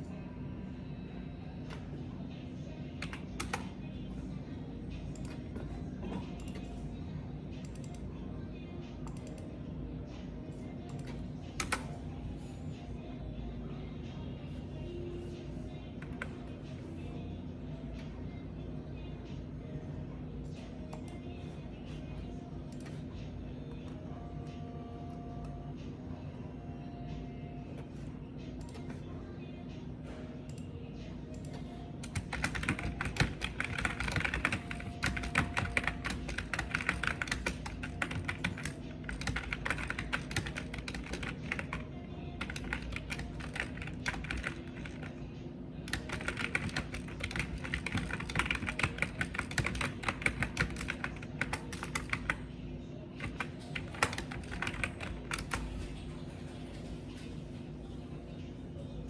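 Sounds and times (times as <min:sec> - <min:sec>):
steady low hum: 0:00.0 - 0:59.0
computer keyboard typing: 0:02.9 - 0:03.9, 0:05.1 - 0:06.9, 0:10.9 - 0:12.0, 0:16.0 - 0:16.5, 0:31.3 - 0:45.2, 0:45.8 - 0:52.5, 0:53.1 - 0:56.8.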